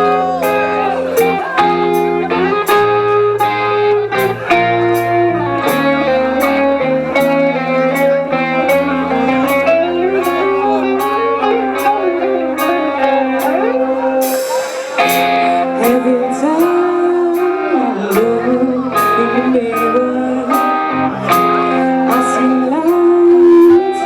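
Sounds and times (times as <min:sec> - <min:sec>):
electric guitar line: 0:00.0 - 0:24.0
stepping bass notes: 0:00.0 - 0:24.0.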